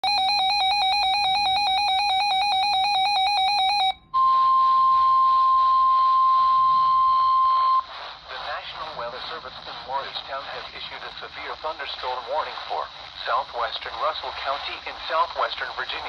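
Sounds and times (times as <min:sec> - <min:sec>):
electronic alarm beeping rapidly: 0:00.0 - 0:07.8
radio static: 0:07.7 - 0:16.0.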